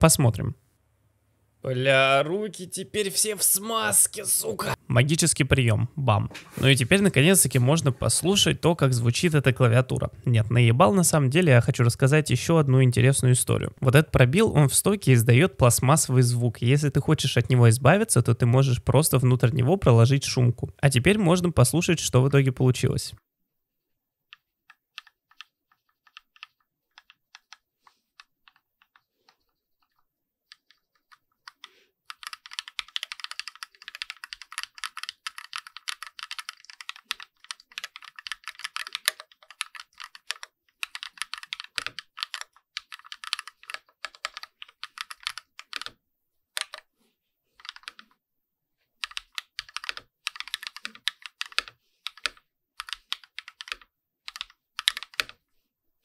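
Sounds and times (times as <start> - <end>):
mechanical keyboard typing: 24.3 - 27.6, 28.2 - 46.0, 46.6 - 46.9, 47.6 - 48.2, 49.0 - 55.4.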